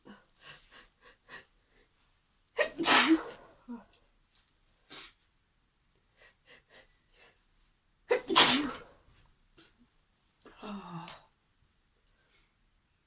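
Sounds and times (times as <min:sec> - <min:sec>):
woman sneezing: 0:02.6 - 0:03.5, 0:08.1 - 0:08.9.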